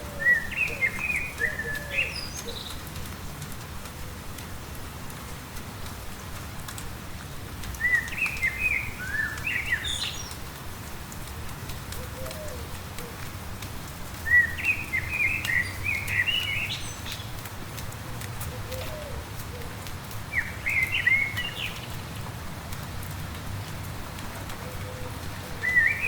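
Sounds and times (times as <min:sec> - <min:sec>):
songbird singing: 0:00.0 - 0:03.2, 0:07.4 - 0:10.5, 0:14.1 - 0:17.5, 0:18.4 - 0:23.0, 0:24.1 - 0:26.0
light rain: 0:00.0 - 0:26.0.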